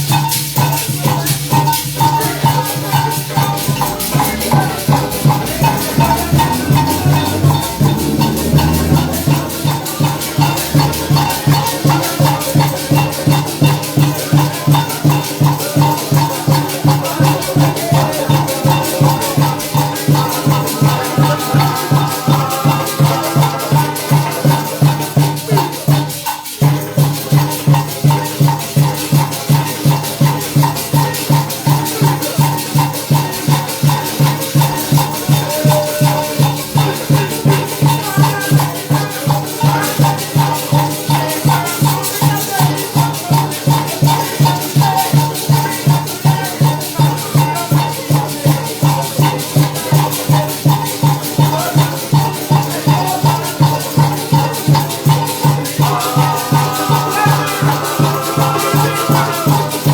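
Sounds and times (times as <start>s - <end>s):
maracas shaking: 0.0s - 59.9s
band music with pulsing beat: 2.2s - 14.4s.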